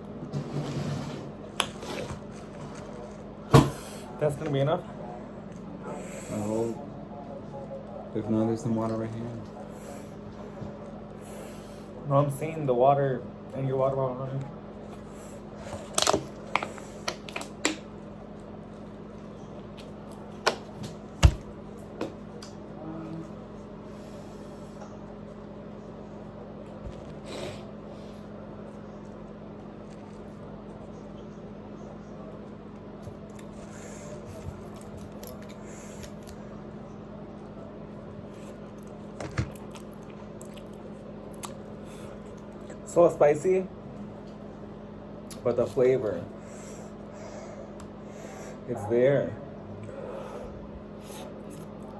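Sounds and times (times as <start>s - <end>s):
steady low hum: 0.0s - 51.9s
quiet chewing: 24.7s - 42.9s, 49.7s - 51.9s.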